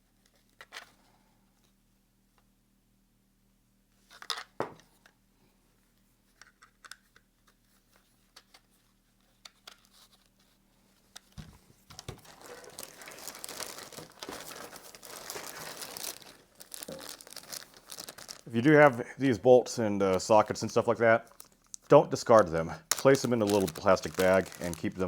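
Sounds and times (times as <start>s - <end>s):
plastic bag crinkling: 11.9s - 19.0s, 20.1s - 25.0s.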